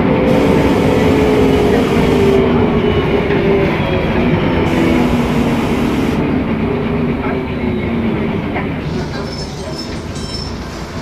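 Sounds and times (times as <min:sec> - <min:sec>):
diesel bus engine drone: 0:00.0 - 0:07.4.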